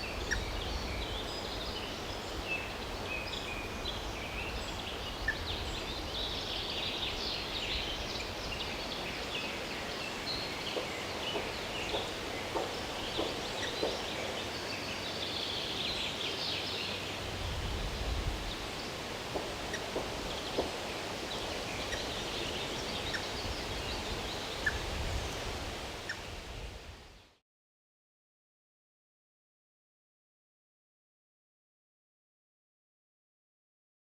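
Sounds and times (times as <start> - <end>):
steady background hiss: 0.0 - 27.4
birds chattering and calling: 0.2 - 15.9, 19.4 - 26.3.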